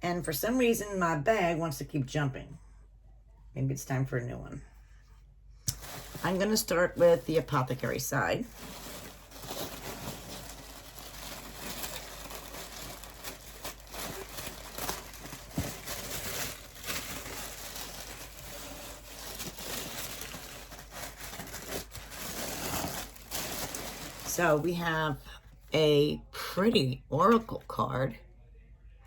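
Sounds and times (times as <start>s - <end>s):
packing paper rustling: 5.7s - 6.7s, 7.4s - 24.7s.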